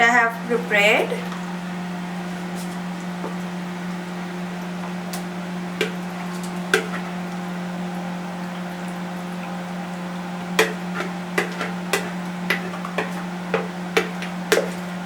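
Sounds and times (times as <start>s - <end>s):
steady low hum: 0.0s - 15.0s
utensil knocking against bowl: 5.8s - 7.1s, 10.6s - 14.9s.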